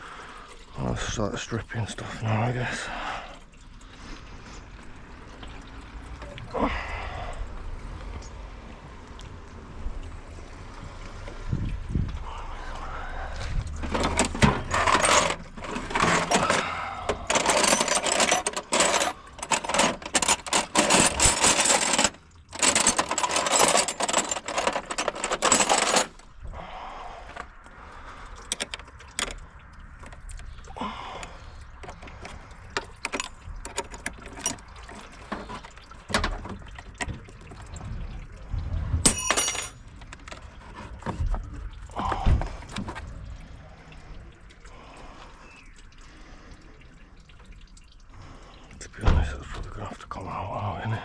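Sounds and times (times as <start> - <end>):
tools and metal parts clinking: 13.7 - 26.3, 28.4 - 29.4, 31.8 - 37.3, 39.0 - 41.2.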